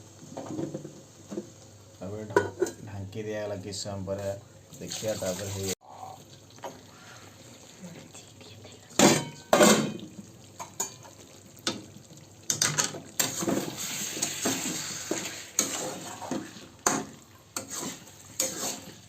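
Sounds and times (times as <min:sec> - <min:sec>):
food sizzling: 0:00.0 - 0:19.0
spoon scraping metal pan: 0:13.2 - 0:19.0.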